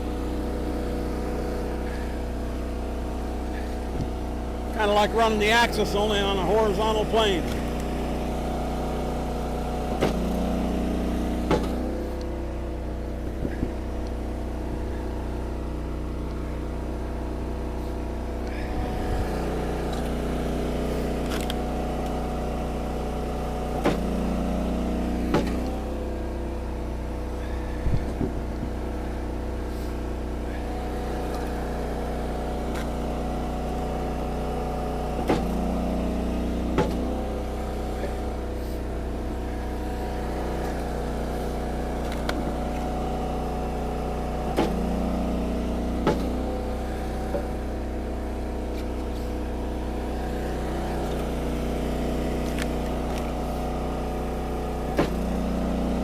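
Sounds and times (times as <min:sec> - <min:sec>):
gas engine running: 0:00.0 - 0:56.0
log splitter ram knocking: 0:04.8 - 0:12.1, 0:23.7 - 0:25.8, 0:35.0 - 0:38.7, 0:44.4 - 0:47.7, 0:54.8 - 0:55.6.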